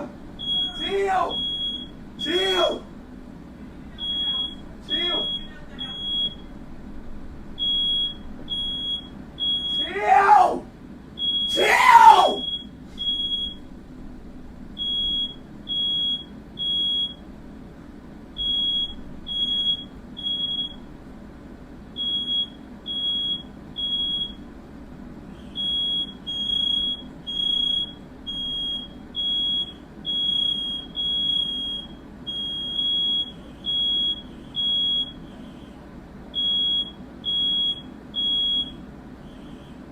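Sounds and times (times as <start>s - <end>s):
smoke alarm beeping: 0.4s - 2.8s, 4.0s - 6.5s, 7.6s - 9.9s, 11.2s - 11.7s, 12.3s - 13.7s, 14.8s - 17.2s, 18.4s - 20.8s, 22.0s - 24.4s, 25.4s - 35.3s, 36.4s - 39.6s
loud pitched cries: 9.8s - 10.7s, 11.5s - 12.4s.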